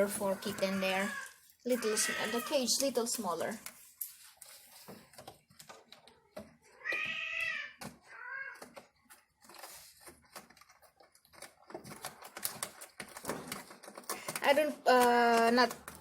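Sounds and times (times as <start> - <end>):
kitten meowing: 6.8 - 8.7.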